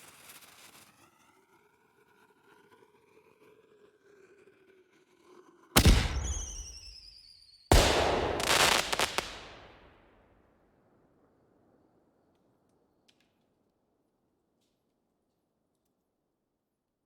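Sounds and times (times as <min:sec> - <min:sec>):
bang with crackling tail: 0:05.8 - 0:06.8, 0:07.7 - 0:09.8
explosion bang: 0:05.8 - 0:06.8, 0:07.7 - 0:09.8
high falling whistle: 0:06.1 - 0:07.6.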